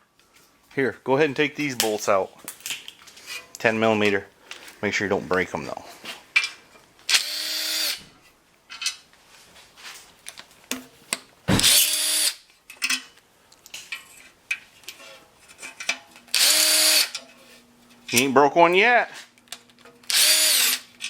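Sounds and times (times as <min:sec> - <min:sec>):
power driver motor whine: 0:20.1 - 0:20.8.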